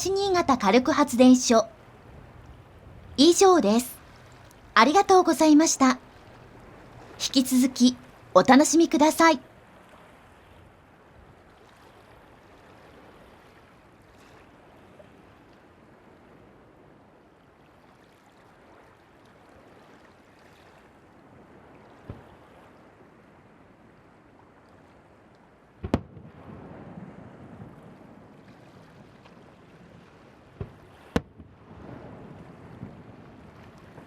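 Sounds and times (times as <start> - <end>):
wind and surf hiss: 0.0 - 34.0
firework bang: 25.8 - 26.9.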